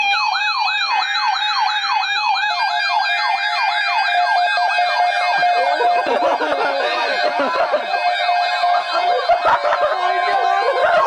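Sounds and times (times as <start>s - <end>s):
electronic yelp siren: 0.0s - 11.0s.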